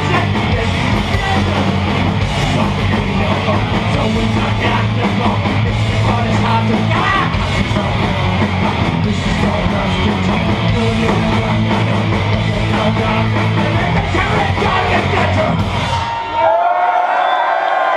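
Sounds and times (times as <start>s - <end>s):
distorted guitar: 0.0s - 16.4s
thrash punk band playing: 0.0s - 16.4s
drums: 0.0s - 17.1s
person yelling vocals: 6.9s - 7.4s.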